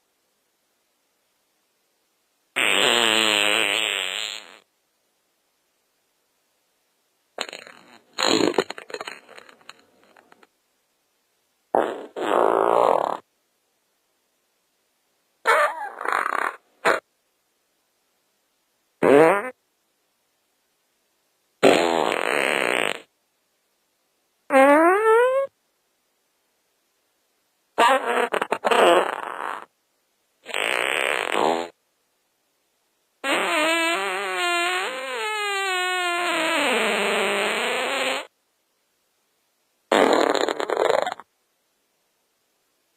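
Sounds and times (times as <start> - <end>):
farting: 2.6 - 4.7, 7.4 - 10.5, 11.7 - 13.3, 15.4 - 17.0, 19.0 - 19.6, 21.6 - 23.1, 24.5 - 25.5, 27.8 - 29.7, 30.4 - 31.8, 33.2 - 38.3, 39.9 - 41.3.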